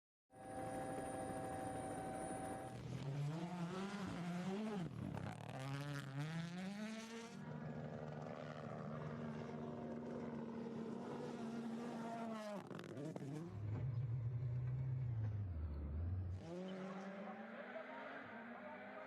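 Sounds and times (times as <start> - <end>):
rally car engine revving: 2.2 - 19.0.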